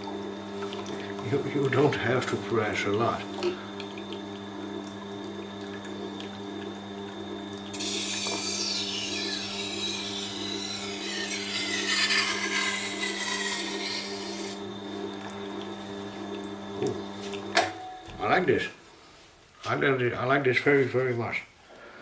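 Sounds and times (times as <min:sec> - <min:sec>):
sharpening machine humming: 0:00.0 - 0:18.4
knife scraping on grindstone: 0:11.1 - 0:14.6.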